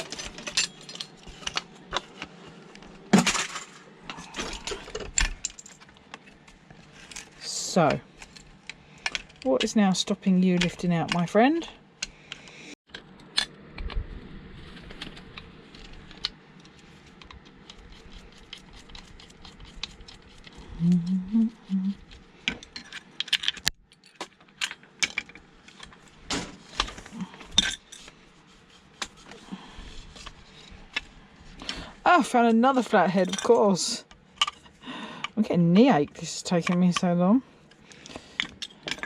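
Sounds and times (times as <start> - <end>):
hand tools clinking on metal: 0.0 - 1.7, 32.8 - 34.6.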